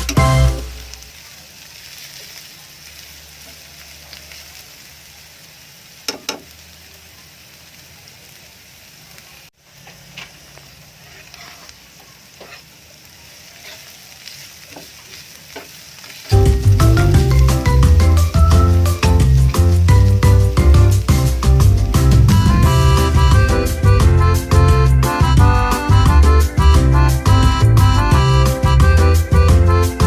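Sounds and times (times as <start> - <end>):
loud music: 0.0 - 0.8, 16.4 - 30.0
chicken sizzling in a pan: 0.0 - 30.0.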